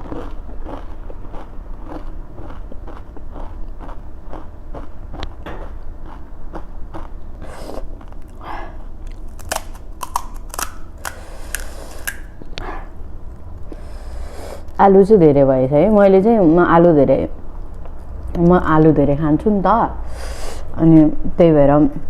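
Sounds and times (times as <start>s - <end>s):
chewing with mouth clicks: 0.0s - 12.7s
crisp shells crunching: 9.0s - 12.4s.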